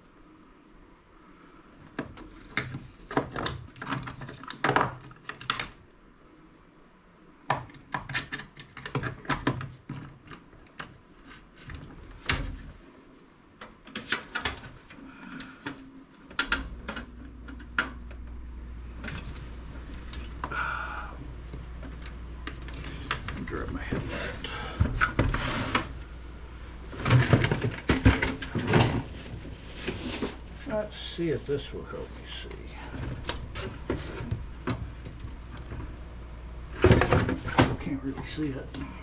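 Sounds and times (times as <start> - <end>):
steady low hum: 10.4 - 39.0.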